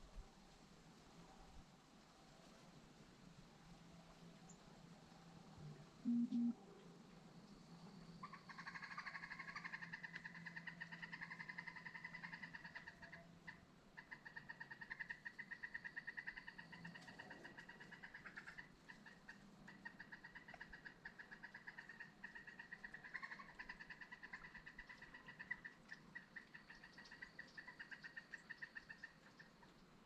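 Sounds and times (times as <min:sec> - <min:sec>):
animal pulsing trill call: 0:06.1 - 0:06.6.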